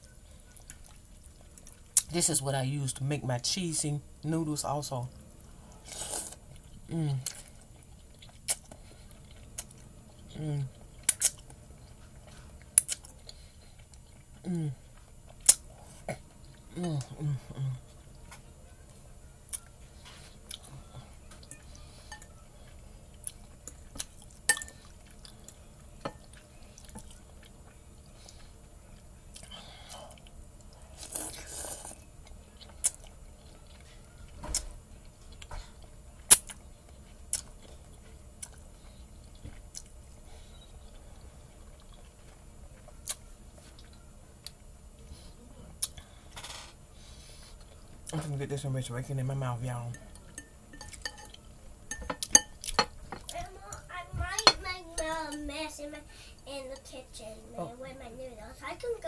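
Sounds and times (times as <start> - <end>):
person chewing noodles: 0.1 - 2.1, 5.3 - 18.4, 19.4 - 45.1.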